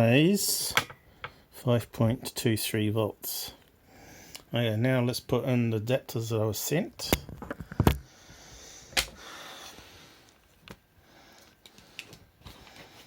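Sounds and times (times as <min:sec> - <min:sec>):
soft breathy hiss: 0:03.3 - 0:04.6, 0:08.0 - 0:10.4.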